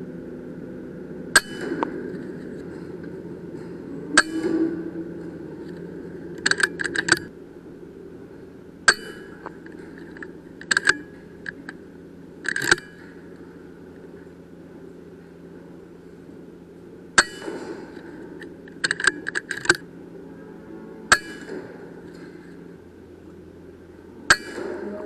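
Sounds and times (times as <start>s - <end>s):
steady low hum: 0.0s - 25.0s
air rifle metallic clicks: 5.6s - 7.3s, 8.9s - 11.8s, 12.4s - 13.1s, 17.2s - 19.8s.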